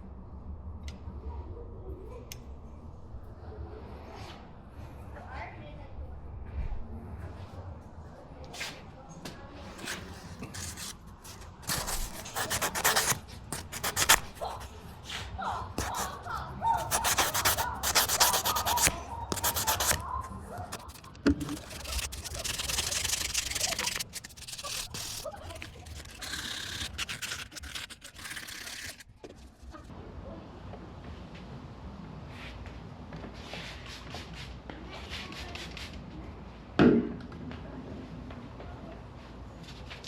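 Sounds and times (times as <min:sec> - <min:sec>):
hand rubbing on metal: 0:09.7 - 0:14.8, 0:15.8 - 0:29.0.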